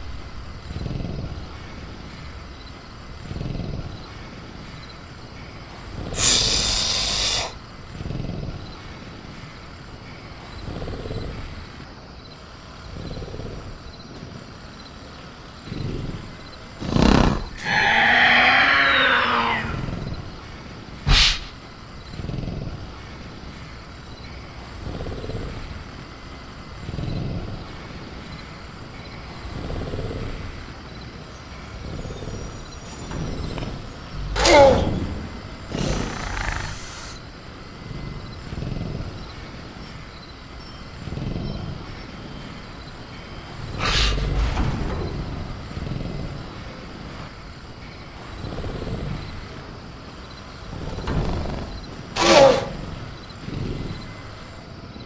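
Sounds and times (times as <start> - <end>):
creature growling breaths: 0.0 - 11.8, 18.8 - 55.0
hissing burst: 5.7 - 7.6, 21.0 - 21.6, 34.0 - 37.2, 43.6 - 47.3.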